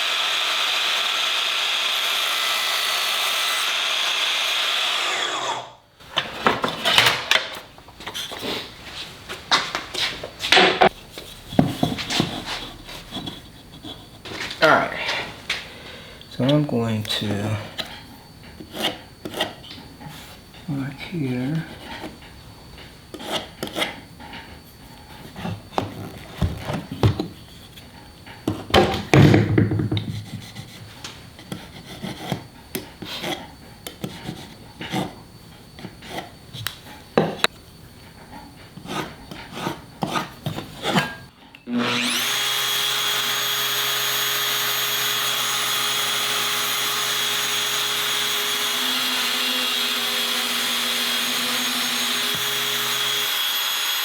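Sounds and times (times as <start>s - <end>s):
power tool running: 0.0s - 5.8s, 41.7s - 54.0s
wood and tools knocked on bench: 6.1s - 7.6s, 28.5s - 30.4s.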